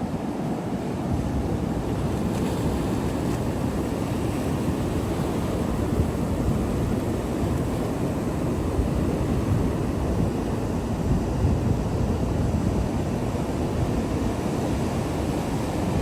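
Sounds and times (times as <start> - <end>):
wind on microphone: 1.0 - 16.0.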